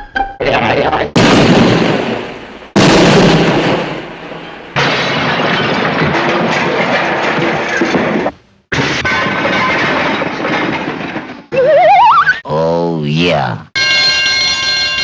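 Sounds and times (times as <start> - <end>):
cartoon explosions: 1.1 - 12.4
explosion rumble: 1.2 - 11.5.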